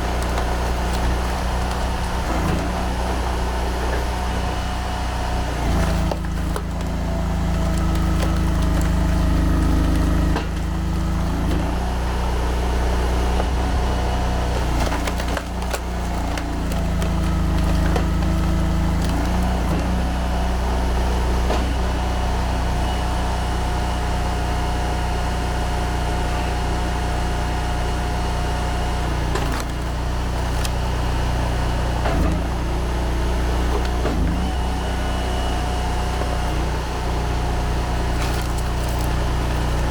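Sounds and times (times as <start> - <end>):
wood cracking and splintering: 0.0 - 21.8, 28.6 - 39.9
log splitter engine running: 0.0 - 39.9.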